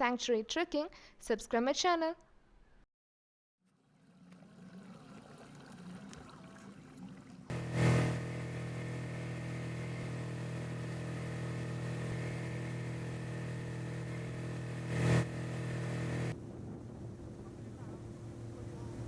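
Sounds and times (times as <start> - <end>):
vehicle engine running steadily: 7.5 - 16.4.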